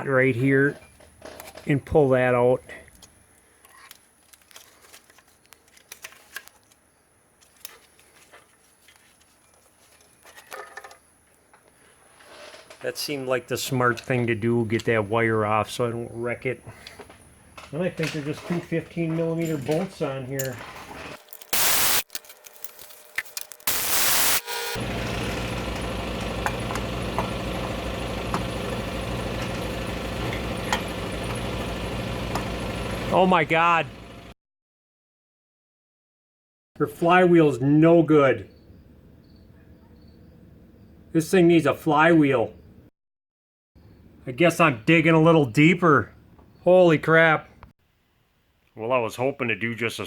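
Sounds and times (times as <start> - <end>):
light metal scraping: 12.1 - 13.0
motor humming: 23.7 - 33.3.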